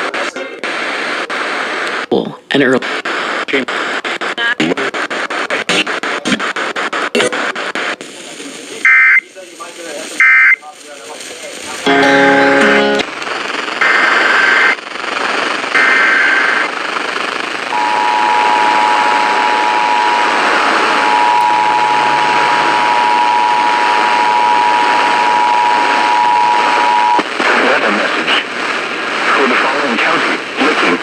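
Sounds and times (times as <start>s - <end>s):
radio hiss: 0.0s - 31.0s
buzzing two-tone data burst: 11.8s - 13.1s, 17.7s - 27.2s.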